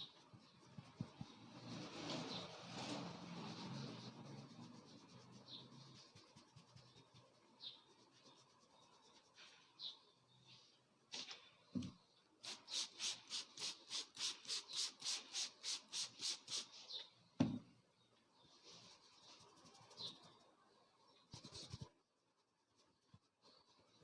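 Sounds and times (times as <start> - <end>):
hands rubbing a head: 0.4 - 9.7, 12.4 - 17.0.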